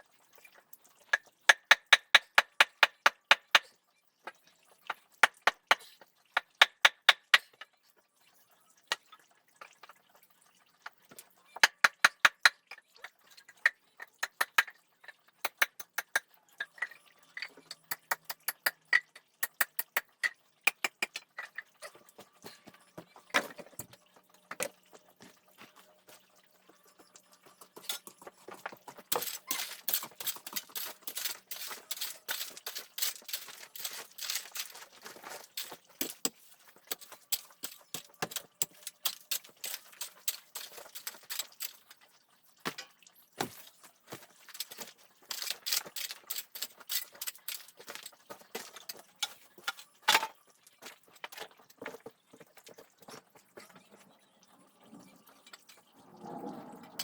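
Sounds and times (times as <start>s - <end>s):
rustling and crackling: 28.2s - 42.0s, 42.8s - 50.0s.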